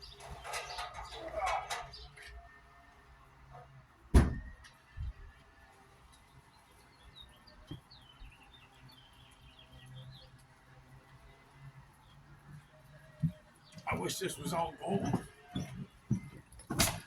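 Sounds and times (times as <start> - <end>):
birds chirping: 0.0 - 3.0, 5.8 - 17.0
dull thump: 4.1 - 4.6.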